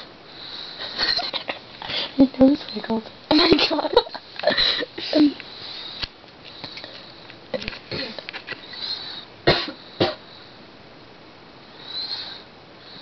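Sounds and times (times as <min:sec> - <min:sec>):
breath whistling through nose: 0:11.8 - 0:13.0.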